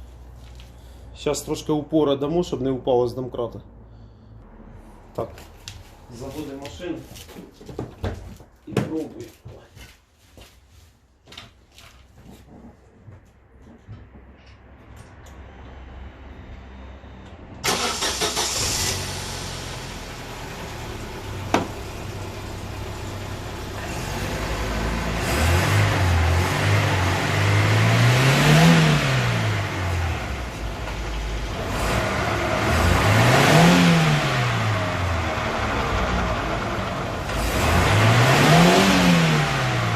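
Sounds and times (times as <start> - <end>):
car engine starting and revving: 15.4 - 39.9.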